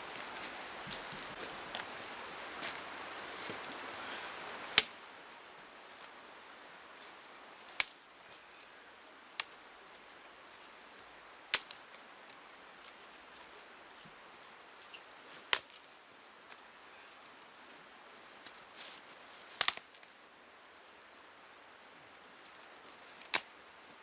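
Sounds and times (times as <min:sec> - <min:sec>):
faint background hiss: 0:00.0 - 0:24.0
dead wood snapping: 0:04.8 - 0:05.0, 0:07.8 - 0:08.0, 0:11.5 - 0:11.8, 0:15.5 - 0:15.8, 0:19.6 - 0:20.1, 0:23.2 - 0:23.5.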